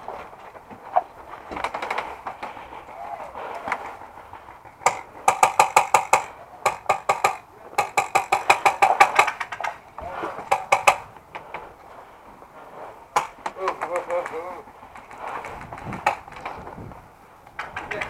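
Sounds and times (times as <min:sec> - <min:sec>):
airsoft guns firing: 0:04.8 - 0:11.1.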